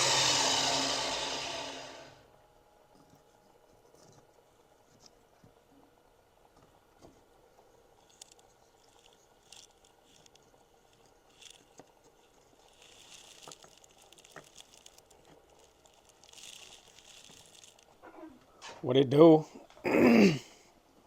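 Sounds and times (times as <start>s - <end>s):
soft rustle: 7.0s - 18.9s.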